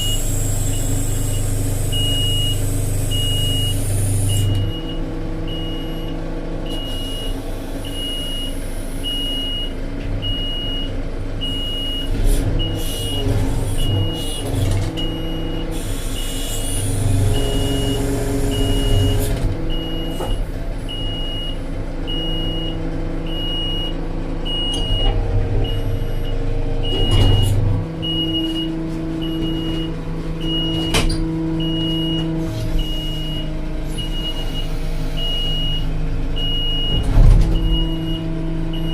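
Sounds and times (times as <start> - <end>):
backhoe diesel engine running: 0.0 - 38.9
high beeping alarm: 17.4 - 38.9.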